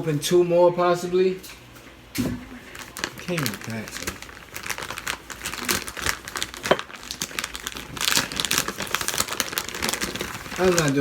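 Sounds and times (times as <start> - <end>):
plastic wrapping crinkling: 2.5 - 11.0.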